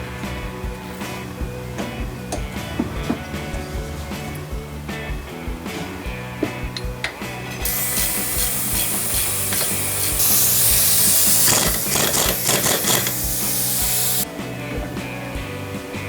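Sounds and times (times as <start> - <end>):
background music with beat: 0.0 - 16.0
workshop tool hissing and rattling: 7.6 - 14.2.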